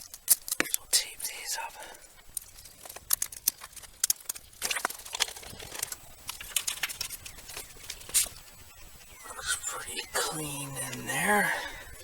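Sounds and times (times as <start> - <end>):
cables clicking and crinkling: 0.0 - 8.9
rustling: 1.7 - 8.8.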